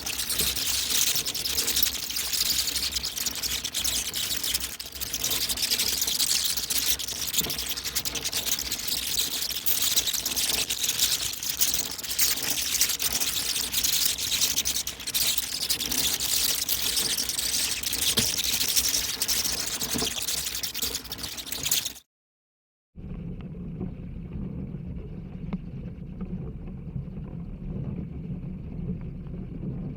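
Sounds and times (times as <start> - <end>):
bats chittering and clicking: 0.0 - 22.1.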